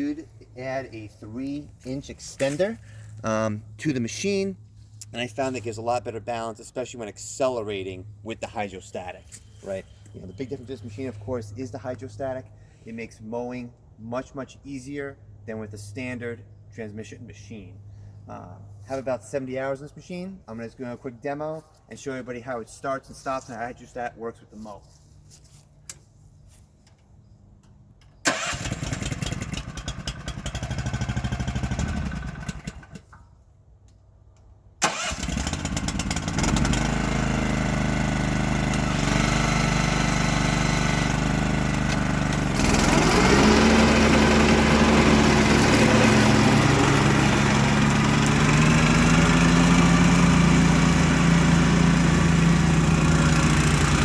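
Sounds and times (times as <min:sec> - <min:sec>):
tractor engine starting and running: 0:27.6 - 0:33.3, 0:33.9 - 0:54.0.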